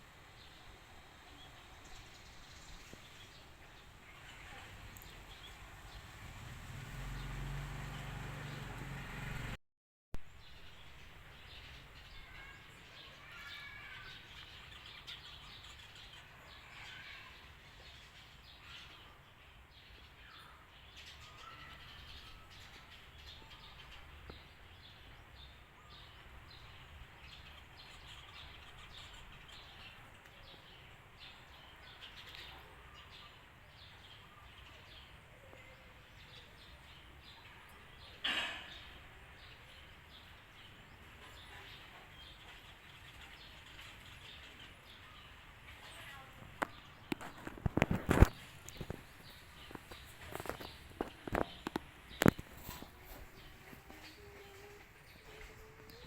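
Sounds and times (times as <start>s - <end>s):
low background noise: 0.0s - 9.6s.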